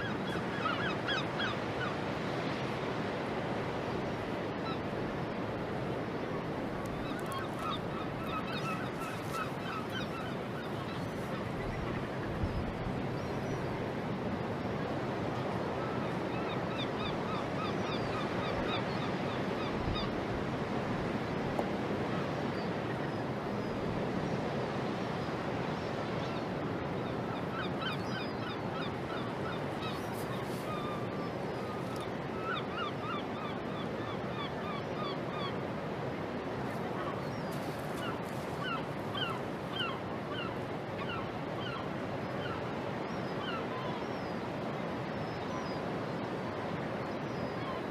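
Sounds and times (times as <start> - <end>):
birds calling: 6.9 - 12.4, 36.7 - 44.3.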